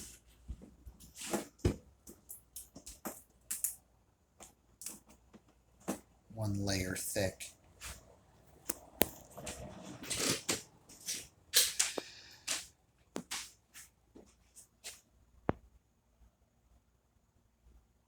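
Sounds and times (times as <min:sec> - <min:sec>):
rustling scrapes: 0:09.3 - 0:11.3.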